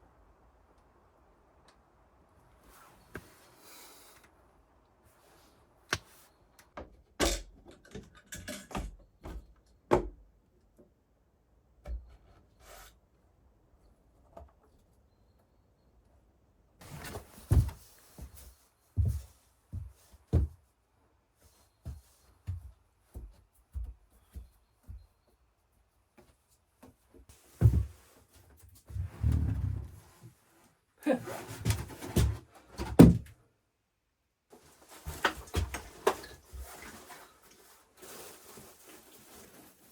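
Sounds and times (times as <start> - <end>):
objects knocking and thudding: 16.8 - 18.4, 27.5 - 28.1, 31.5 - 33.3, 34.9 - 37.1.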